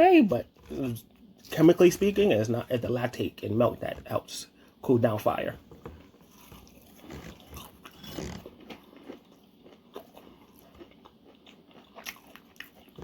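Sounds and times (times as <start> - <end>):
person biting and chewing food: 5.9 - 13.0.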